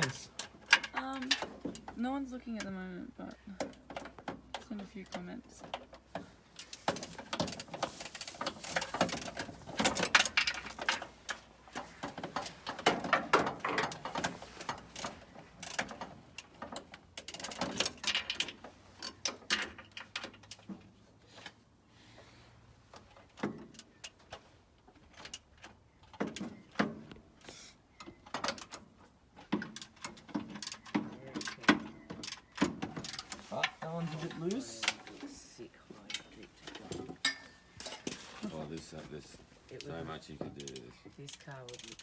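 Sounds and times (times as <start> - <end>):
metal tools and bolts clinking: 6.6 - 20.7, 36.1 - 39.0.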